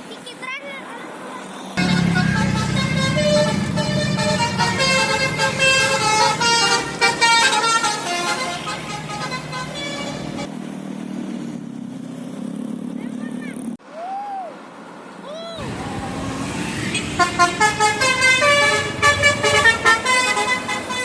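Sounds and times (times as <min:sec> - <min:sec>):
low steady drone: 0:01.8 - 0:07.2
multi-tone bus horn tune: 0:01.8 - 0:10.5, 0:16.3 - 0:21.0.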